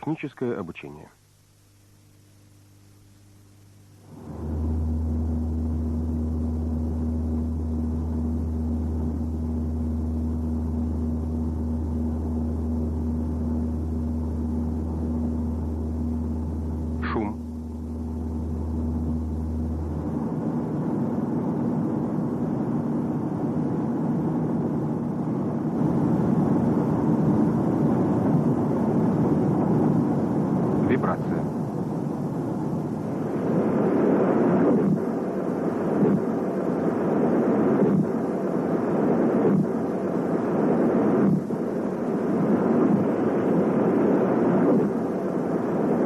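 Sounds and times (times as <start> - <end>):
constant hum tone: 0.0 - 46.0
low rumbling drone: 3.7 - 46.0
moving vehicle rumbling: 4.1 - 21.7.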